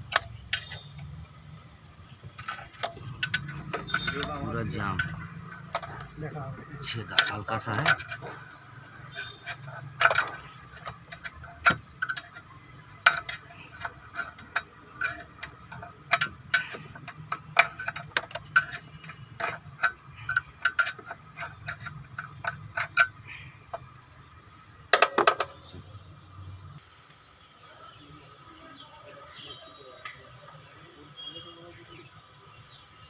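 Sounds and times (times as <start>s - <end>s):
sharp clicks and metallic taps: 2.2s - 25.8s.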